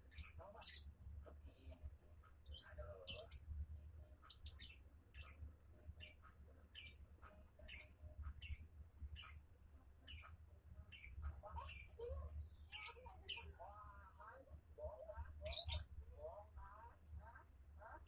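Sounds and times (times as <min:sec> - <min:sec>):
bird chirping: 0:02.5 - 0:03.4, 0:04.3 - 0:05.4, 0:06.0 - 0:07.0, 0:07.6 - 0:09.4, 0:10.0 - 0:13.5, 0:15.4 - 0:15.9.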